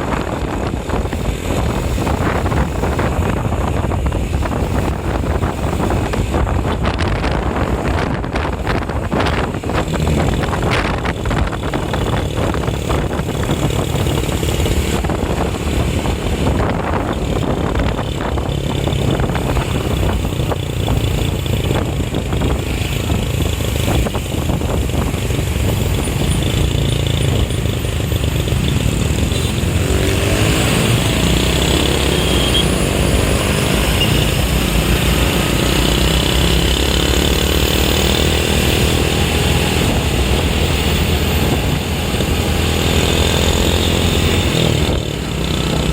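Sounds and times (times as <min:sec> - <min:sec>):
engine speeding up: 0:00.0 - 0:45.9
vehicle engine and road noise: 0:00.0 - 0:45.9.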